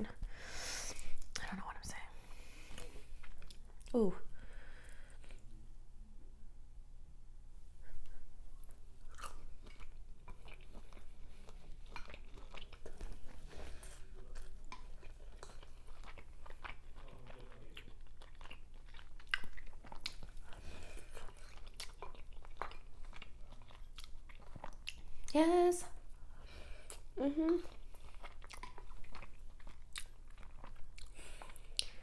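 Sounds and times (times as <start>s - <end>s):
person chewing and biting: 9.0s - 25.3s, 26.9s - 32.0s.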